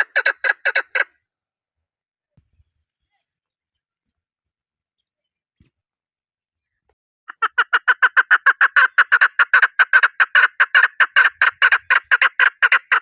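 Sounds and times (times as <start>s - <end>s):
partridge clucking calls: 0.0s - 1.1s, 7.3s - 13.0s.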